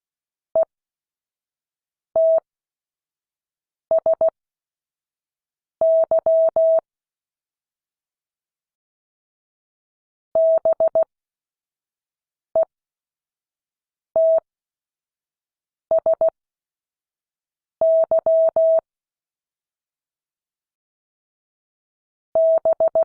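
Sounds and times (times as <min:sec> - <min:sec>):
morse code beeps: 0:17.8 - 0:18.8, 0:22.4 - 0:23.0.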